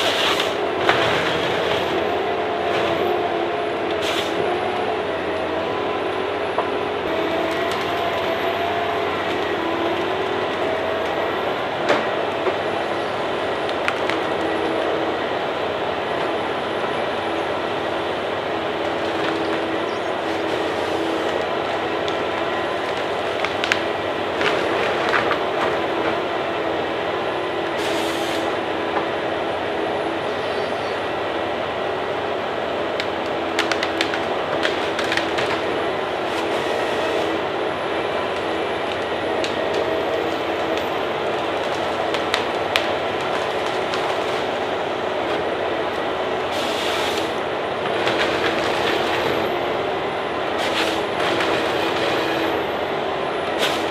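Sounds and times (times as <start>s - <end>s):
tree-cutting machine engine drone: 0.0s - 53.9s
sharp clicks and cracks: 33.0s - 35.6s.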